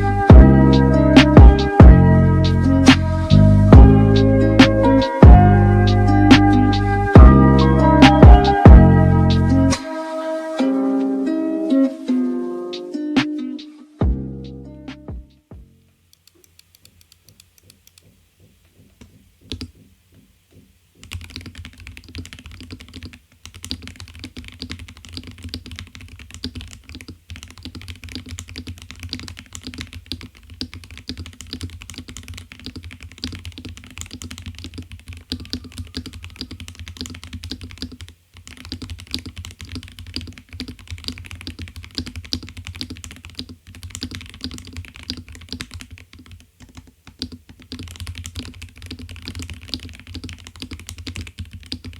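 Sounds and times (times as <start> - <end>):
mechanical keyboard typing: 19.0 - 19.9, 21.0 - 51.9.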